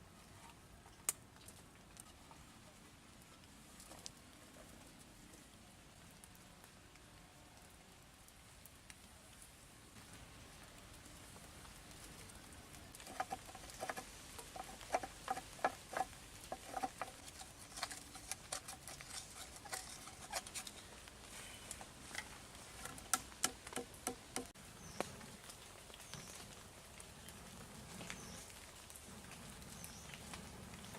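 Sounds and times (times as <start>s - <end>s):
small hard objects clicking: 13.0s - 24.6s.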